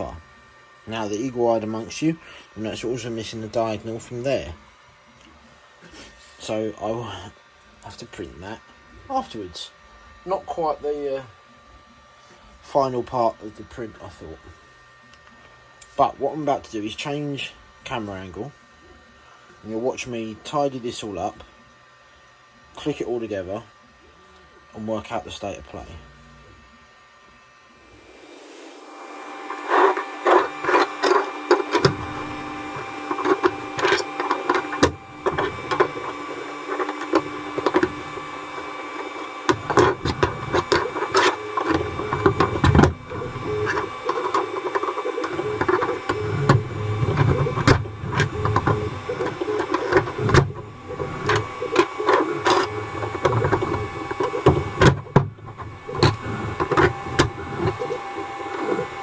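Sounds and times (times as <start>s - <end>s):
stepper motors whirring: 27.8s - 59.0s
plastic parts clicking and knocking: 29.7s - 38.7s, 39.4s - 59.0s.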